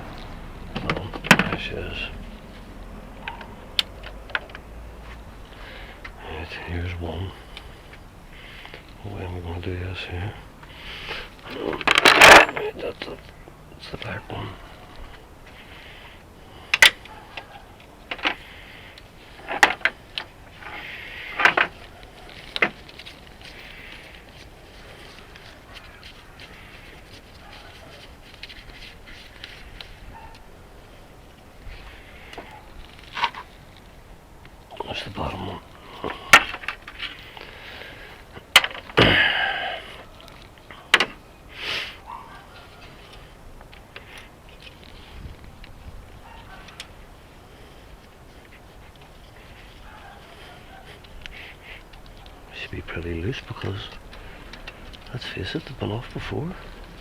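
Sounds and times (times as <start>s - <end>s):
hand tools clicking on metal: 11.6s - 13.3s.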